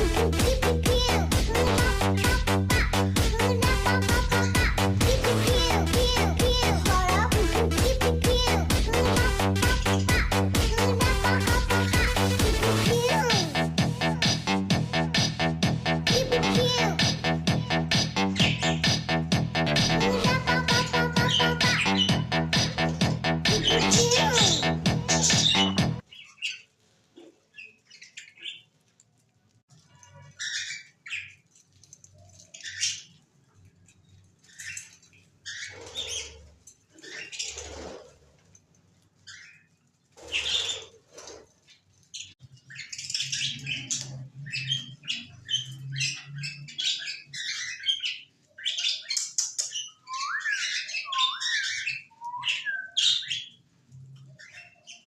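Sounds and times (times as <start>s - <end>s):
birds chirping and squawking: 0.0s - 28.8s, 29.7s - 55.0s.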